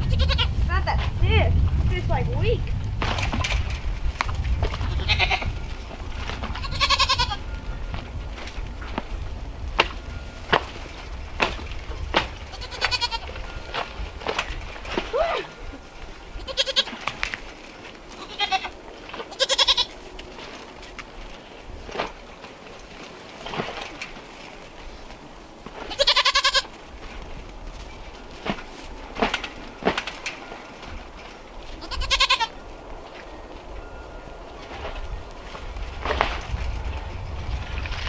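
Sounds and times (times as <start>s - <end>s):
goats bleating: 0.0s - 0.6s, 4.9s - 5.6s, 6.6s - 7.4s, 12.5s - 13.3s, 16.4s - 17.0s, 18.2s - 20.0s, 25.9s - 26.7s, 31.8s - 32.6s.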